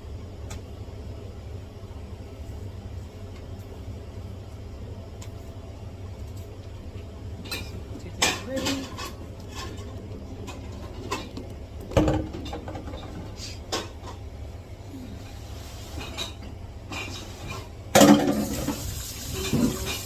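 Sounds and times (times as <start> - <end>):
utensils and dishes clinking: 7.4 - 11.4, 15.9 - 20.0
loud kitchen clatter: 7.4 - 14.3, 15.9 - 20.0.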